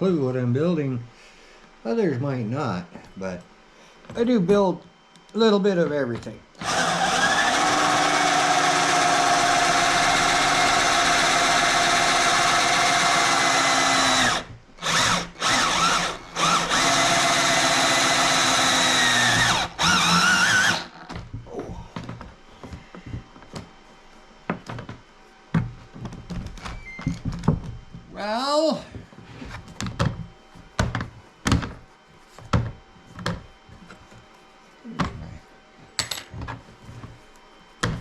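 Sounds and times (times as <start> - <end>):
electric drill motor running: 6.6 - 21.0.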